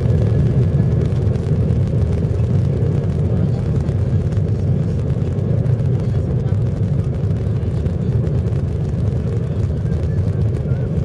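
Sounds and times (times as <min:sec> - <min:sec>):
jet airliner cabin rumble: 0:00.0 - 0:11.0.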